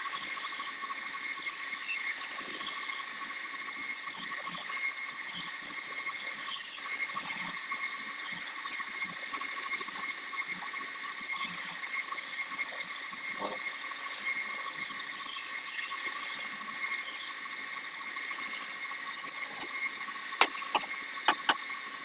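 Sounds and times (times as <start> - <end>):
wood lathe whining: 15.0 - 21.6
turning tool scraping wood: 19.2 - 21.6.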